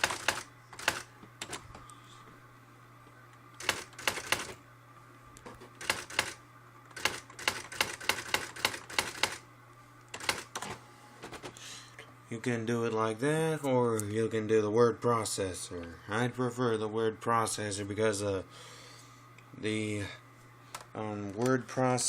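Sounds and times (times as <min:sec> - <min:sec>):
electronic typewriter print strikes: 0:00.0 - 0:01.6, 0:03.6 - 0:04.6, 0:05.8 - 0:09.4, 0:10.1 - 0:10.8
steady low hum: 0:00.0 - 0:22.0.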